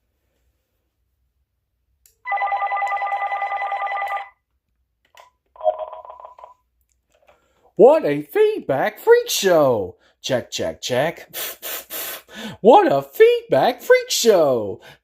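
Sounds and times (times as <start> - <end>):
cordless phone warbling ring: 2.3 - 4.4, 5.6 - 6.6.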